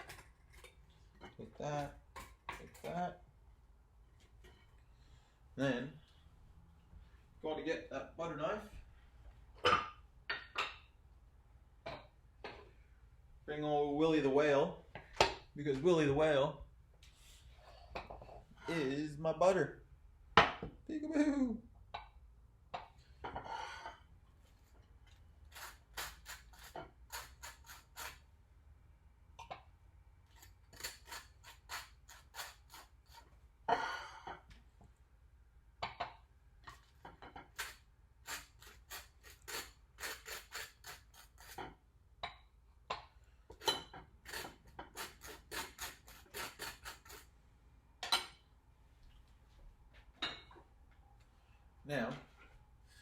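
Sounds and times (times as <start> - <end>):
knife scraping butter on toast: 25.5 - 28.2, 30.3 - 33.3, 37.4 - 41.8, 43.5 - 47.3.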